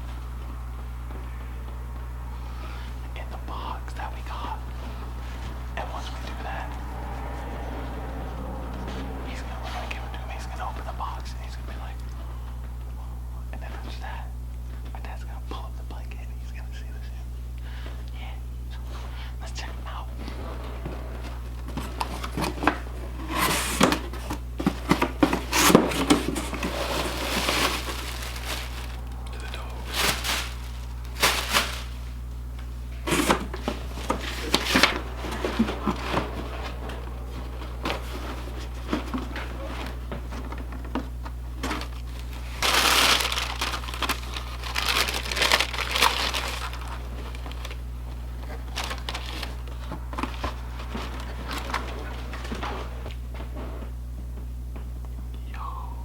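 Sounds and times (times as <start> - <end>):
cardboard scraping and rustling: 20.4 - 32.2, 33.0 - 47.8, 48.5 - 52.0
paper packaging crinkling: 21.7 - 32.4, 33.0 - 39.9, 41.6 - 51.9.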